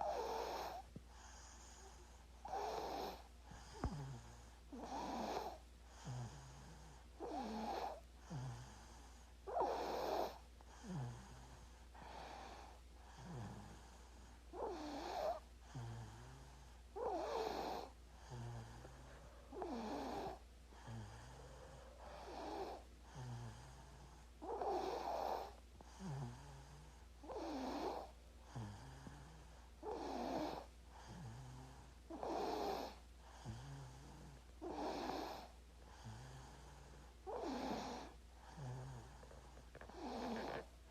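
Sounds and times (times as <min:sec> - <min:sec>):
baby snoring: 0:00.0 - 0:40.9.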